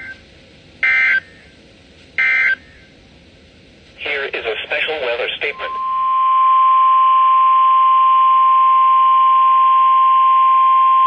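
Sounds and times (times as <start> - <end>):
steady alarm tone: 2.2 - 2.7, 5.5 - 9.9
faint radio hiss: 2.9 - 6.0.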